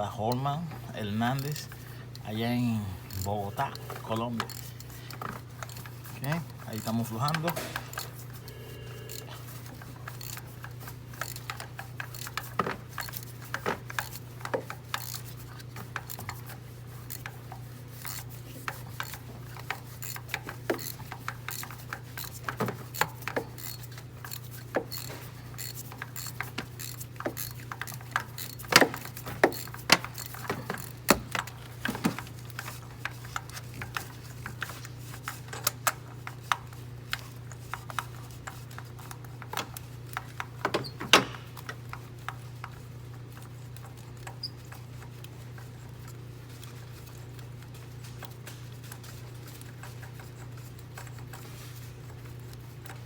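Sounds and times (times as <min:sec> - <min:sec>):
steady low hum: 0:00.0 - 0:53.0
ratchet wrench clicking: 0:01.2 - 0:44.3.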